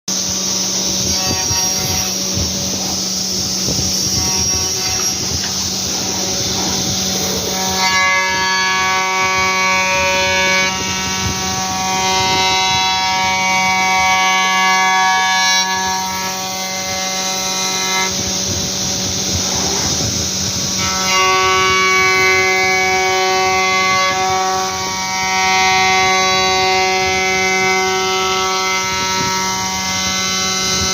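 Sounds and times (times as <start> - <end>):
rough rushing noise: 0.1 - 9.7, 18.1 - 20.8
cnc router whining hum: 0.1 - 30.9.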